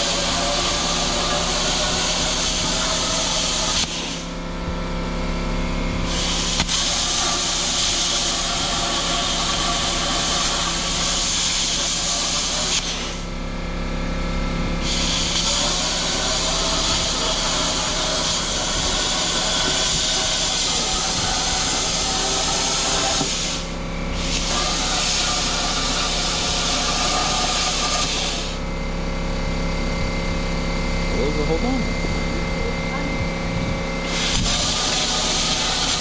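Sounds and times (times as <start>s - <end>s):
plasma cutter hissing: 0.0s - 4.4s, 6.0s - 13.4s, 14.8s - 28.7s, 34.0s - 36.0s
machine hum: 0.0s - 36.0s.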